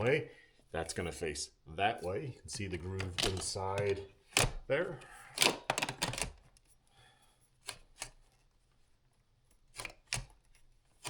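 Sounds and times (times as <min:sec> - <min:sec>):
plastic parts clicking and knocking: 0:02.5 - 0:06.8, 0:07.6 - 0:08.8, 0:09.4 - 0:11.0.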